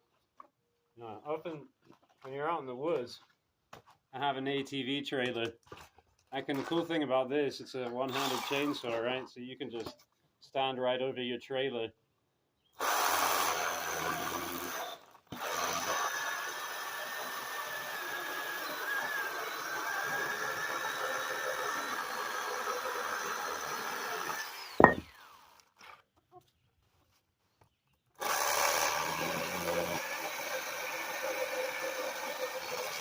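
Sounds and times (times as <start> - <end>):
mini chainsaw cutting wood: 8.1 - 8.9, 12.8 - 25.9, 28.2 - 33.0.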